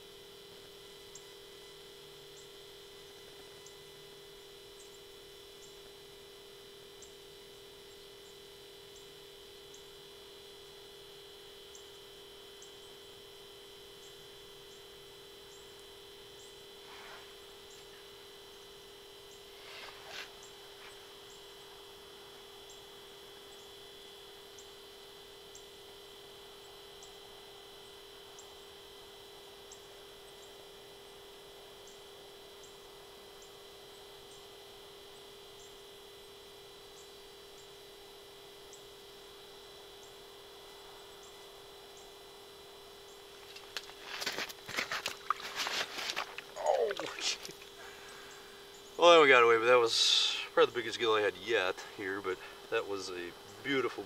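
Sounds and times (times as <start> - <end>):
electronic hum and whine: 0.0 - 54.0
short scuffs: 43.5 - 47.6.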